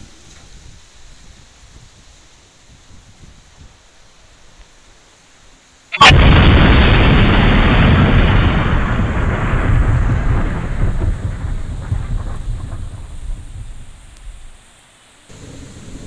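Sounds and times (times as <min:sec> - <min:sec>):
thunderclap: 0:05.9 - 0:14.6, 0:15.3 - 0:16.0.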